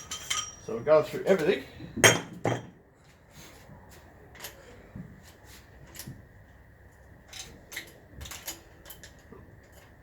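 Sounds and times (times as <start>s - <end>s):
metal parts and tools handled: 0.0s - 2.7s, 7.2s - 10.0s.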